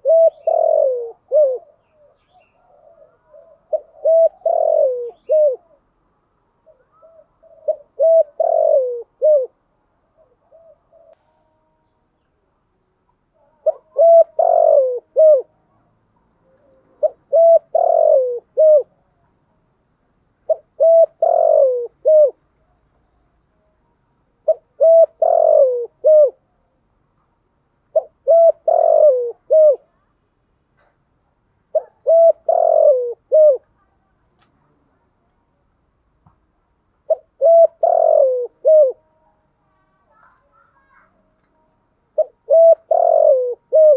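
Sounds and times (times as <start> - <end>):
dove cooing: 0.0 - 5.9, 6.6 - 11.2, 13.4 - 15.6, 16.4 - 19.0, 20.4 - 22.5, 24.4 - 26.5, 27.9 - 30.1, 31.7 - 33.7, 37.0 - 39.3, 42.1 - 43.9.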